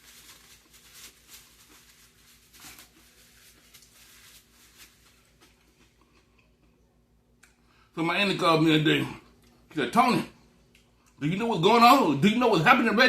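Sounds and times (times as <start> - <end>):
man chewing food: 5.2 - 7.6.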